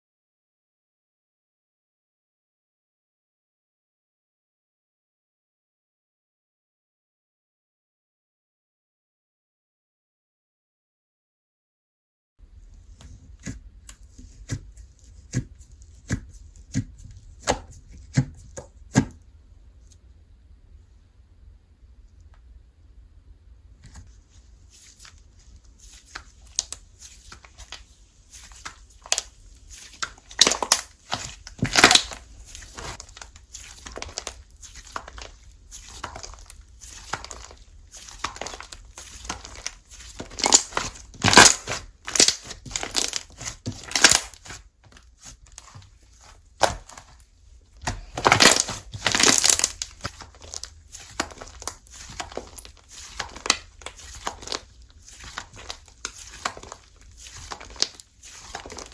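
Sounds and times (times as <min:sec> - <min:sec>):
slime crackling and popping: 0:25.8 - 0:58.9.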